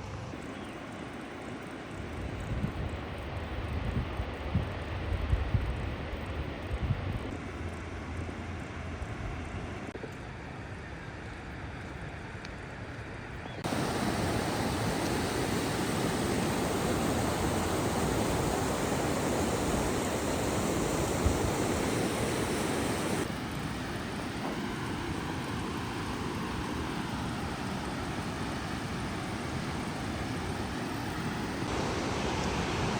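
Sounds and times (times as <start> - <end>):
waterfall rushing: 13.6 - 23.3, 31.6 - 32.9.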